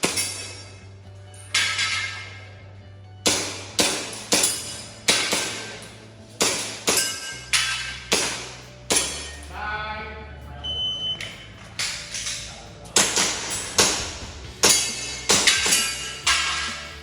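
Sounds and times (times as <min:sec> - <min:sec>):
shot timer beep: 0:10.6 - 0:11.4.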